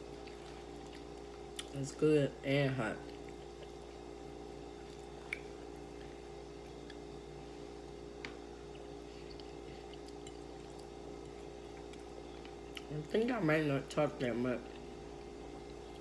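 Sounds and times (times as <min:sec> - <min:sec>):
person chewing: 0:00.0 - 0:01.8, 0:03.0 - 0:12.9
steady background hum: 0:00.0 - 0:16.0.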